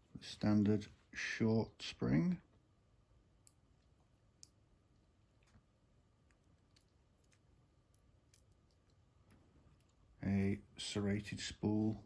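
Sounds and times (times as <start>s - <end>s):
small clicks of metal lock pins: 6.7s - 9.0s.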